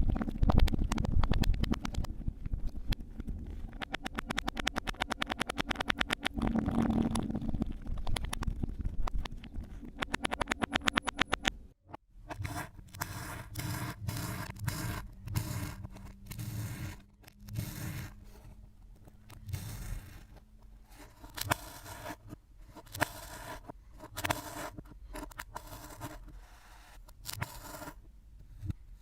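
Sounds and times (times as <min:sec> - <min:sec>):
sharp clicks: 0:00.0 - 0:18.2.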